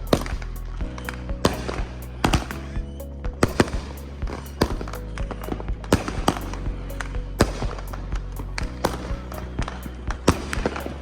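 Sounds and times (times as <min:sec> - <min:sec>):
music playing: 0:00.0 - 0:11.0.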